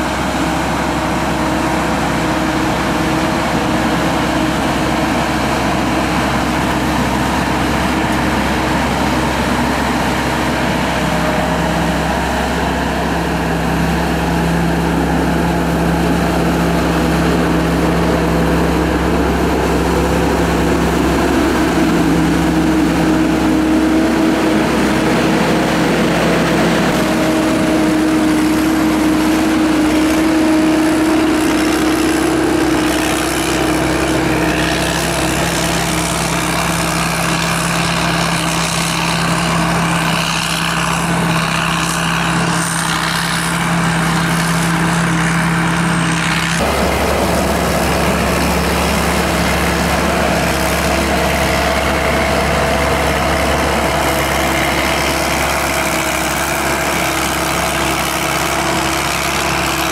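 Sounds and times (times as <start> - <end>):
combine harvester engine running: 0.0 - 59.9.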